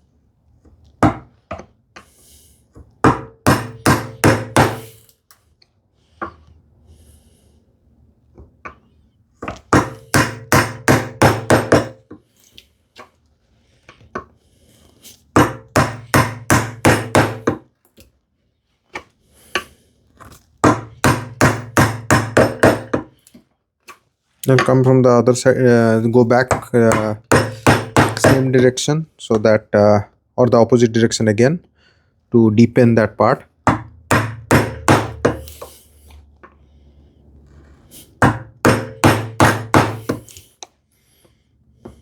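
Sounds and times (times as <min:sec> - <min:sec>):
mallet striking chisel: 0:03.0 - 0:05.0, 0:09.4 - 0:12.0, 0:15.4 - 0:17.6, 0:20.6 - 0:23.1, 0:26.5 - 0:28.6, 0:33.7 - 0:35.7, 0:38.2 - 0:40.3.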